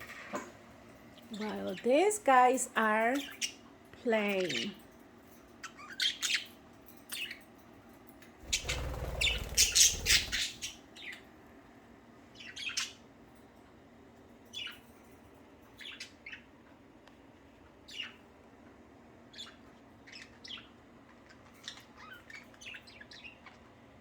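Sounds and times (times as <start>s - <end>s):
budgerigars chirping and squawking: 5.6s - 6.6s, 8.4s - 11.2s, 12.4s - 13.0s, 17.9s - 18.2s, 19.3s - 20.8s, 21.4s - 23.6s.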